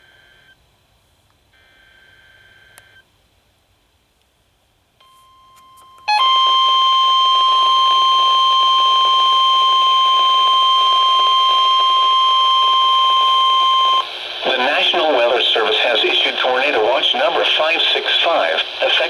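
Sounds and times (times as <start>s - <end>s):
loud steady alarm tone: 6.1s - 15.4s.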